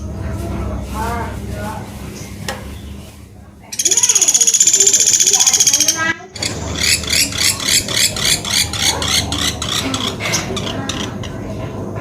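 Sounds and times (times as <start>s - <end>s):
woodpecker calling: 3.5s - 11.4s.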